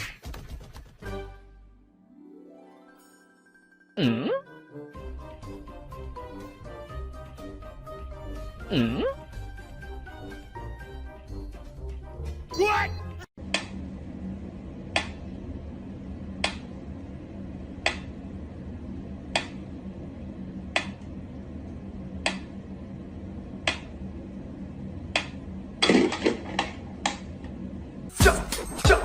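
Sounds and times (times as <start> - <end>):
low steady hum: 13.4 - 28.1.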